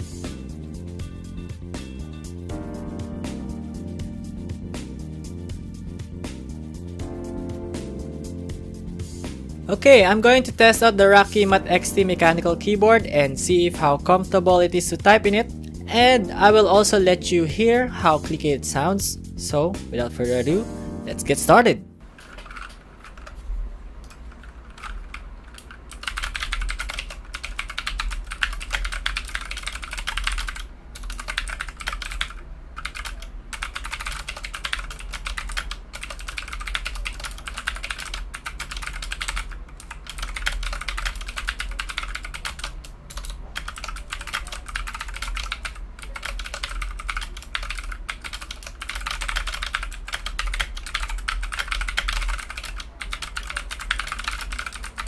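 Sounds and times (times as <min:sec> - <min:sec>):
mechanical keyboard clicking: 0:22.2 - 0:23.4, 0:24.0 - 0:55.0.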